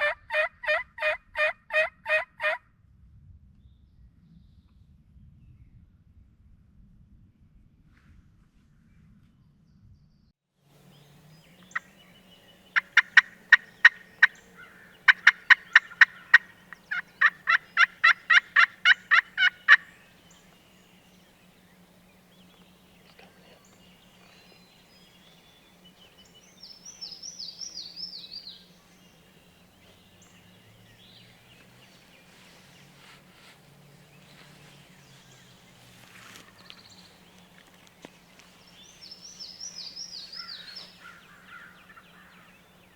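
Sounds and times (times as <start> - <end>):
turkey yelping: 0.0 - 2.6, 12.7 - 20.2, 39.5 - 42.5.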